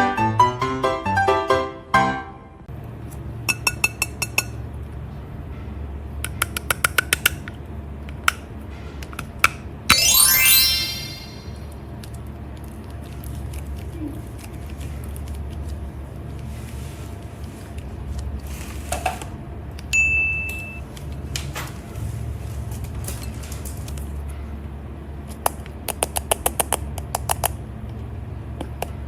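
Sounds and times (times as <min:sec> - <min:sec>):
rising pitch sweep: 0:09.9 - 0:11.6.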